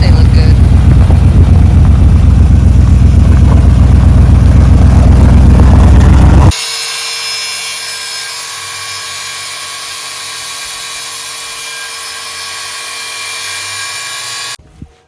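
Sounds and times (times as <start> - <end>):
electric power tool whining: 5.9 - 14.6.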